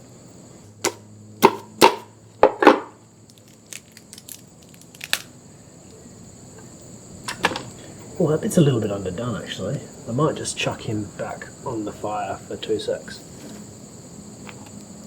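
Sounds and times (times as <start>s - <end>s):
knife chopping through crab shell: 0.9s - 2.9s.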